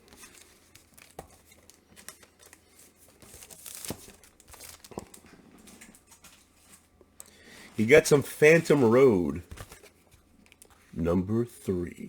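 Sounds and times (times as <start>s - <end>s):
plastic bag crinkling: 0.0s - 6.3s.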